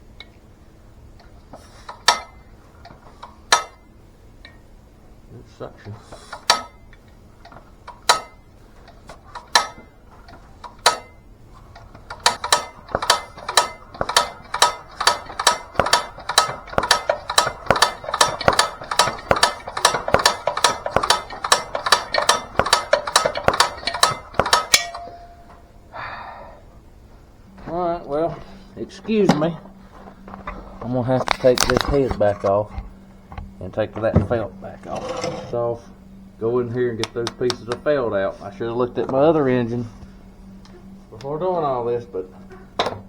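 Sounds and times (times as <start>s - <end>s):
sharp mechanical clicks: 11.8s - 25.1s.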